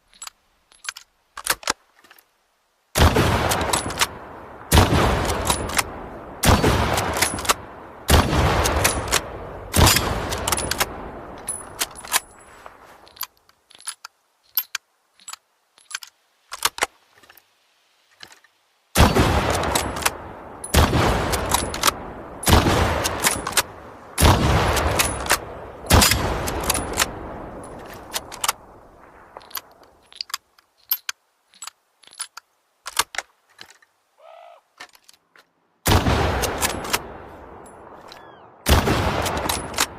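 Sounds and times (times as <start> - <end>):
rifle action clicks and clatter: 0.0 - 2.3, 3.5 - 4.2, 5.2 - 5.9, 7.0 - 7.6, 8.6 - 17.5, 18.1 - 18.6, 19.5 - 23.7, 24.7 - 28.6, 29.2 - 34.0, 34.8 - 35.5, 36.4 - 38.3, 39.1 - 39.9
rifle shots with echo: 3.0 - 12.0, 19.0 - 29.5, 35.9 - 39.9.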